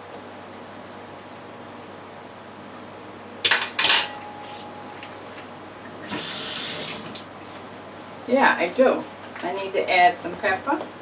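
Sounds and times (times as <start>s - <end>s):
metal spoon clanking on pot: 3.5s - 4.2s.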